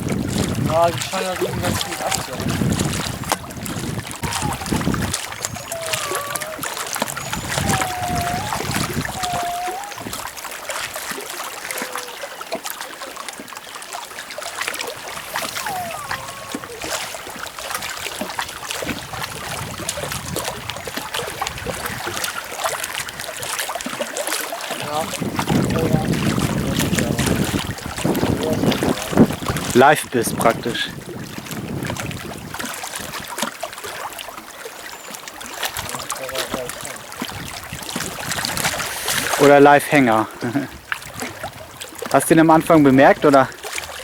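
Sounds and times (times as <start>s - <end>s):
water lapping and splashing: 0.0s - 44.0s
wind: 0.0s - 44.0s
short sliding calls: 4.2s - 10.2s, 15.0s - 17.3s.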